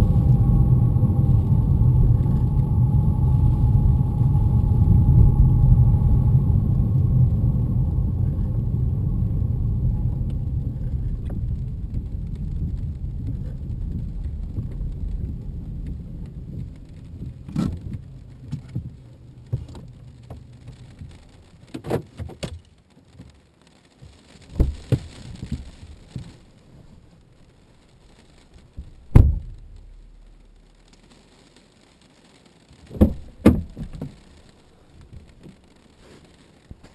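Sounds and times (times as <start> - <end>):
high-pitched whistling whine: 0.0 - 16.2
road and engine rumble: 0.0 - 36.9
sharp clicks and knocks: 32.9 - 34.4.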